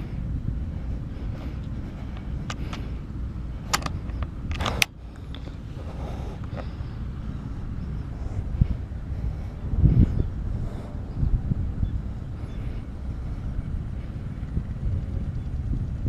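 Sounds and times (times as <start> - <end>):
wind buffeting microphone: 0.0 - 16.0
sharp clicks: 3.6 - 6.8.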